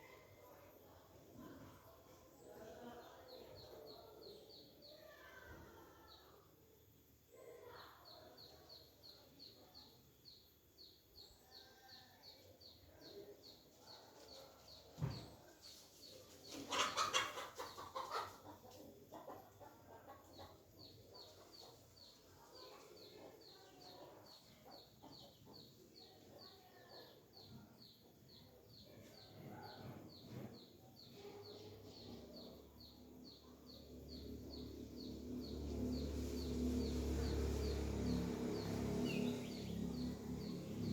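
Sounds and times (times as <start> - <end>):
chickens clucking: 15.8 - 26.4.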